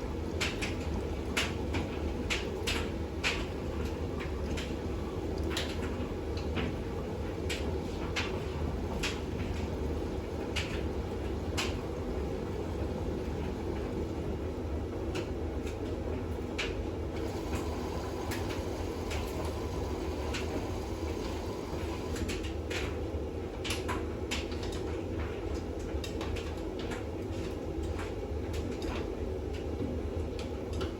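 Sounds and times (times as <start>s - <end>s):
washing machine drum rumbling: 16.4s - 23.1s.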